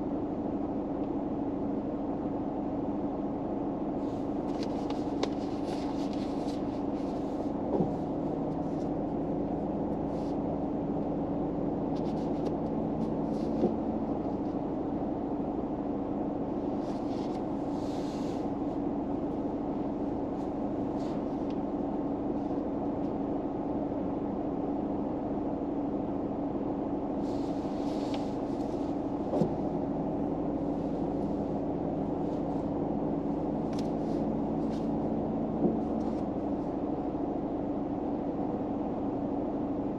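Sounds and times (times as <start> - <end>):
low hum inside a car: 0.0 - 39.9
short rustles: 4.1 - 9.0.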